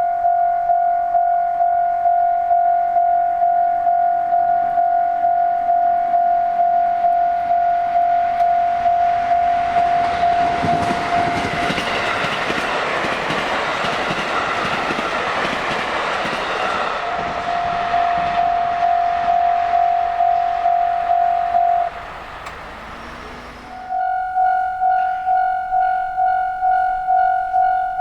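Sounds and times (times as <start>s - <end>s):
electronic crossing warning bell: 0.1s - 15.8s, 16.4s - 28.0s
train passing with wheel noise: 7.9s - 28.0s.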